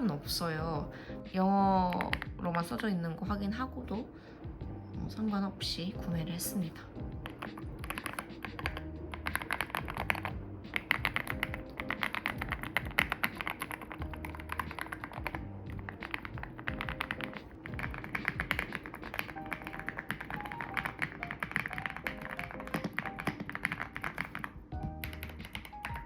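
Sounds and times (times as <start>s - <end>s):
background music: 0.0s - 26.0s
mechanical keyboard typing: 7.2s - 26.0s.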